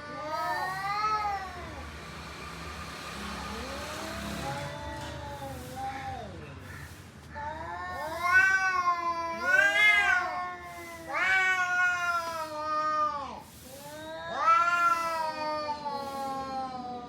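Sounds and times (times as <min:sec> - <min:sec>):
cat yowling: 0:00.0 - 0:01.8, 0:07.4 - 0:17.0.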